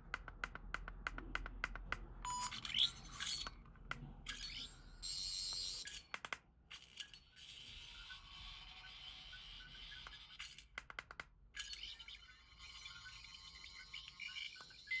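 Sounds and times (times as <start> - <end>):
toy electronic whirr and warbling: 6.7 - 10.8, 11.6 - 15.0.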